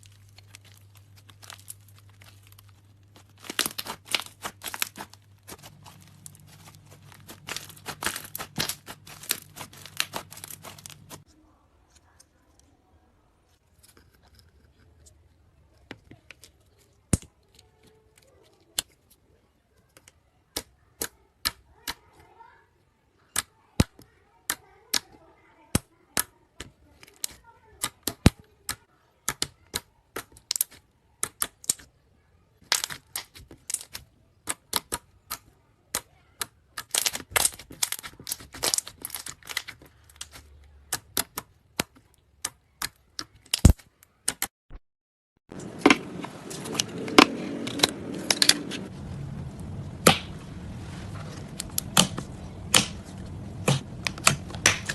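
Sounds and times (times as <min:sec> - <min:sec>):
slime clicking and popping: 0:00.4 - 0:11.2.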